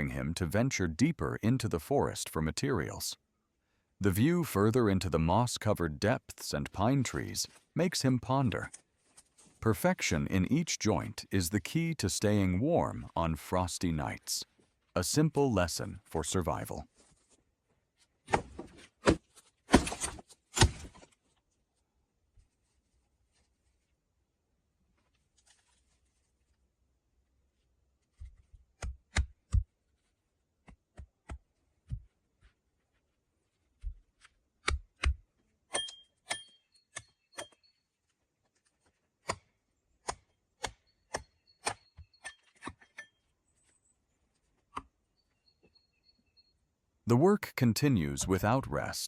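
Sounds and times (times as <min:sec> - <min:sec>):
axe chopping into log: 0:18.3 - 0:21.0.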